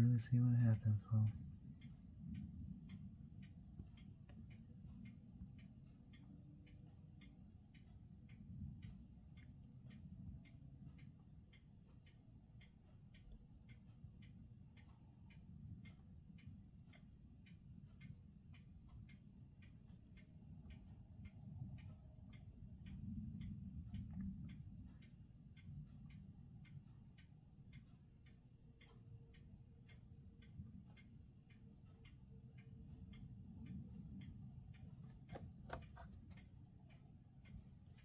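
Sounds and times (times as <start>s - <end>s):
faint low rumble: 0.0s - 11.7s, 13.6s - 38.0s
faint regular ticking: 0.0s - 38.0s.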